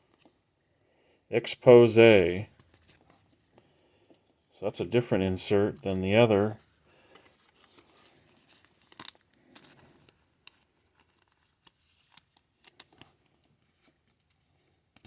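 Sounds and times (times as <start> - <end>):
trading cards being handled: 2.5 - 15.0.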